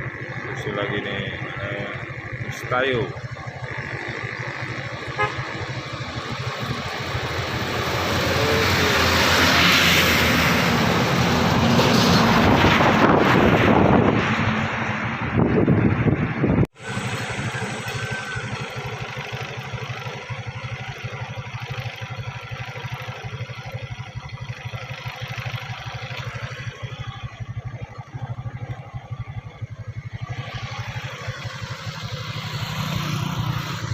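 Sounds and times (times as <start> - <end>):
vehicle engine running: 0.0 - 33.9
wind noise: 10.7 - 16.7.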